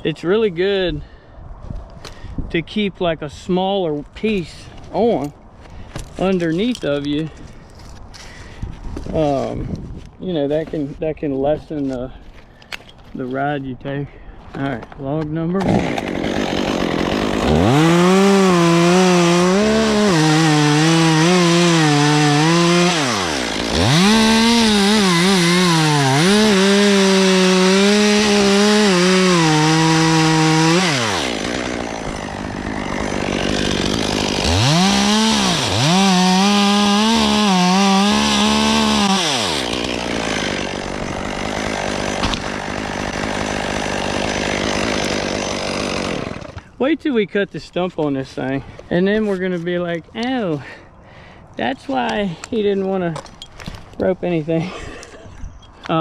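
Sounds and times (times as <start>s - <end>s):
chainsaw cutting a log: 15.6s - 46.8s.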